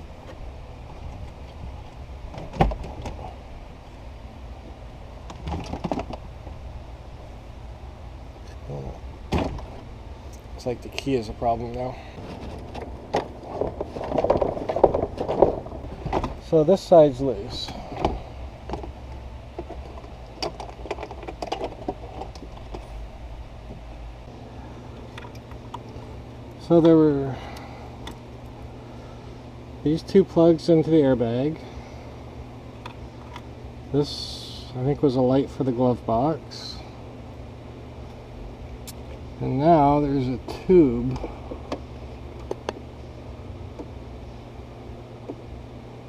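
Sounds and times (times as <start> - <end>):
low steady hum: 0.0 - 46.0.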